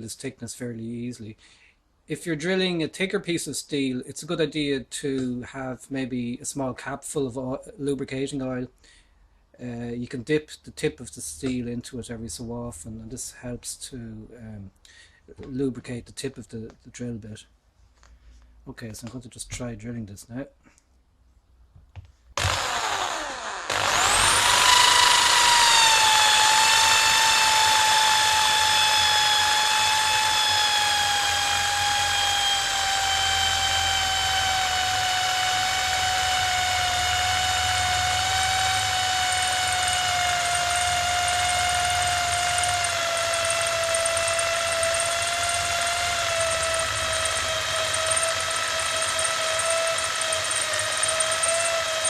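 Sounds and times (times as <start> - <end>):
electric drill boring into steel: 22.4 - 52.0.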